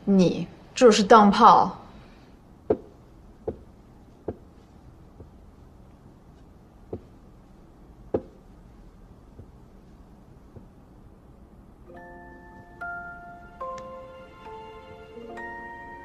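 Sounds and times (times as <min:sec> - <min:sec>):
sharp short knocks: 0:02.7 - 0:04.6, 0:08.1 - 0:08.4, 0:09.3 - 0:09.7.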